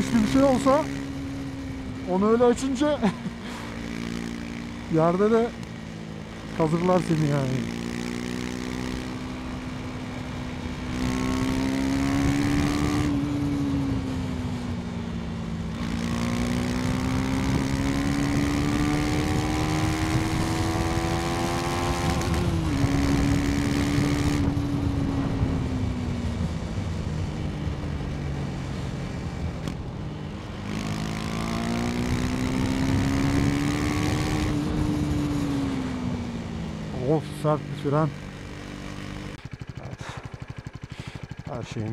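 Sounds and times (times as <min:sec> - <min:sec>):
motorcycle engine revving: 0:00.0 - 0:41.9.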